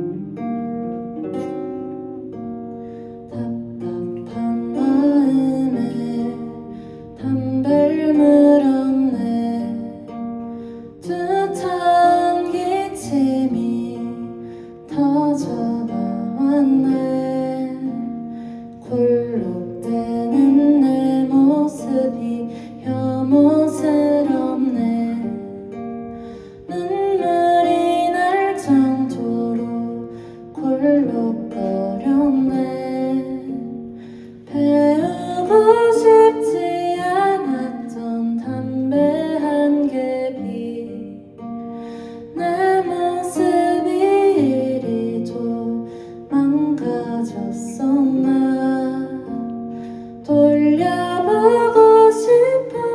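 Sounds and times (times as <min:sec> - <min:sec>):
acoustic guitar chords: 0:00.0 - 0:52.9
person singing: 0:03.2 - 0:52.9.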